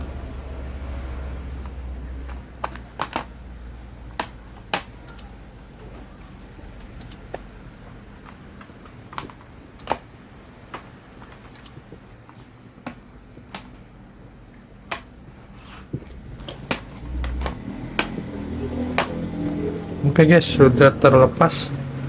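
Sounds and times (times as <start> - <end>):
plastic clips snapping loose: 1.6 - 3.4, 4.1 - 5.3, 8.2 - 10.1, 14.8 - 15.2, 16.0 - 19.5.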